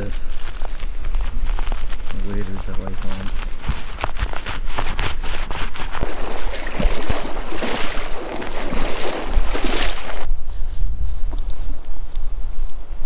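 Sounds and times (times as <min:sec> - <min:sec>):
water splashing and sloshing: 0:02.6 - 0:10.3.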